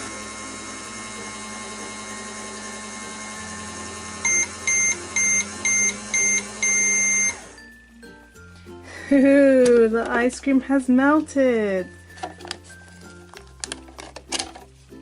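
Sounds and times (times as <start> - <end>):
toy microwave humming: 0.0 - 7.6
microwave beeping: 4.1 - 7.6.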